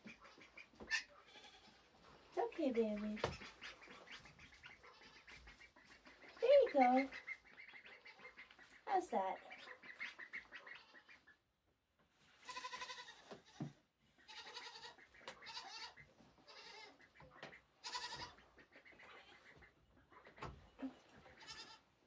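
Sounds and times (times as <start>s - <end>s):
goat bleating: 1.2s - 2.0s, 12.4s - 17.1s, 17.8s - 18.4s, 20.9s - 21.9s.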